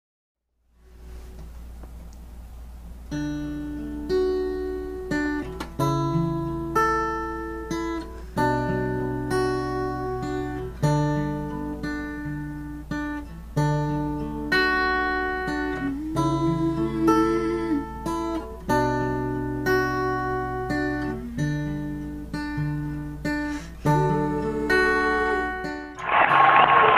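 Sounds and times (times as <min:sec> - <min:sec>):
acoustic guitar strumming chords: 0:03.1 - 0:26.9.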